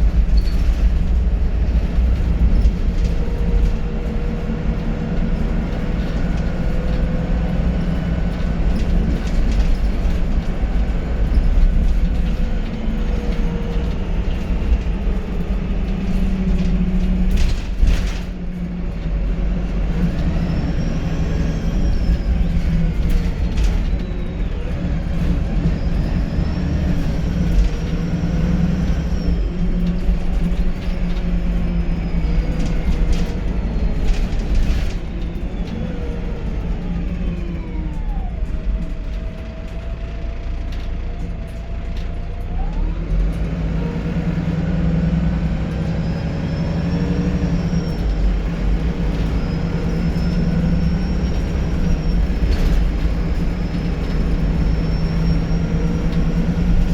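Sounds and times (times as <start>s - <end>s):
bus diesel engine running: 0.0s - 56.9s.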